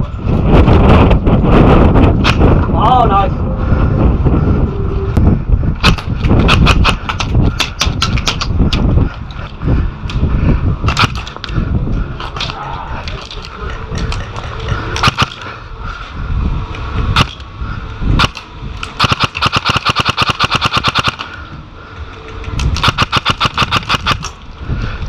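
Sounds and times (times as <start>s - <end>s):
wind rumbling on microphone: 0.0s - 25.0s
airsoft gun firing: 5.8s - 7.2s, 15.0s - 15.4s, 18.2s - 18.4s, 19.0s - 21.4s, 22.8s - 24.3s.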